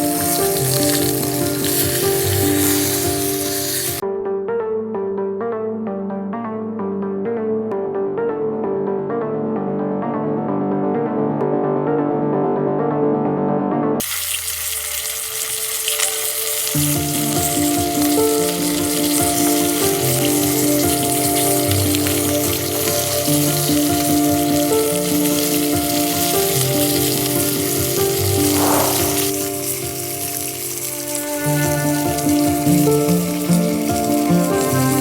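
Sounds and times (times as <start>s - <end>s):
fish sizzling in hot oil: 0.0s - 4.0s, 14.0s - 35.0s
background music: 0.0s - 14.0s, 15.2s - 35.0s.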